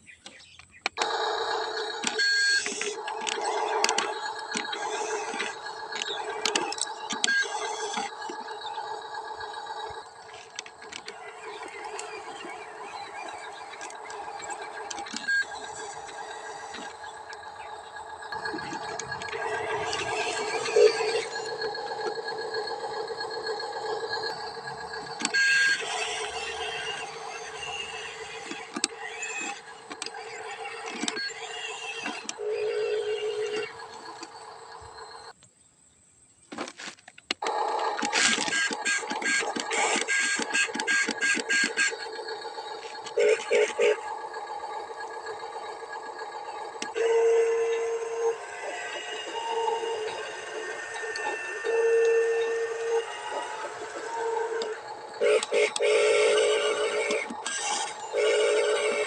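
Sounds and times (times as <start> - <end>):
small electric motors whining: 0.9 - 35.4, 36.8 - 59.0
sharp clicks and scrapes: 1.8 - 8.5, 36.5 - 44.0.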